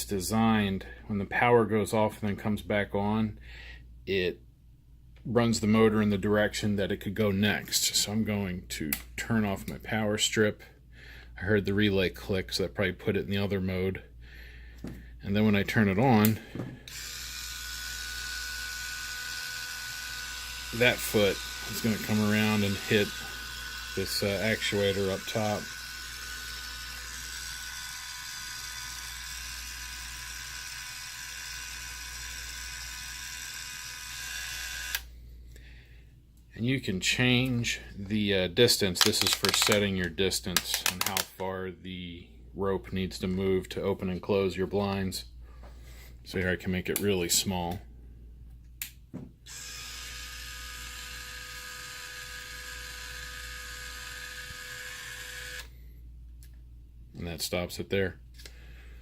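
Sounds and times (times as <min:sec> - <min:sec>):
small electric motor whirring: 0:16.9 - 0:35.1, 0:49.5 - 0:55.8
short clicks: 0:39.0 - 0:39.9, 0:40.5 - 0:41.5.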